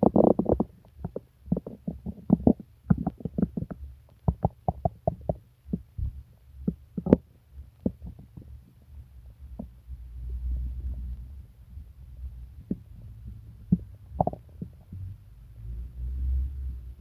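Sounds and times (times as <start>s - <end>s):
stomach gurgling: 0.0s - 5.9s, 6.6s - 8.7s, 12.6s - 15.1s.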